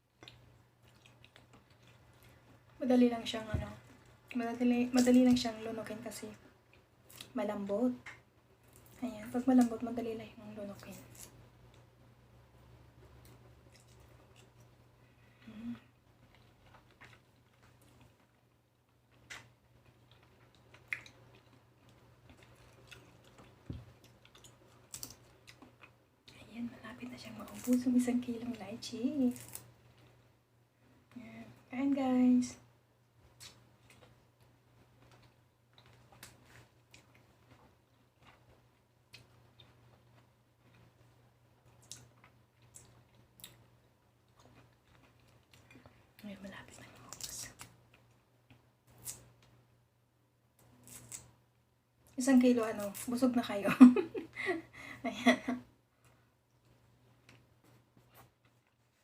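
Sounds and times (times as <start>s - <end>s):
fruit being peeled and chewed: 0.0s - 2.8s, 10.8s - 11.9s, 13.0s - 26.4s, 27.0s - 30.3s, 33.3s - 49.7s, 50.5s - 51.4s
low steady hum: 0.0s - 59.0s.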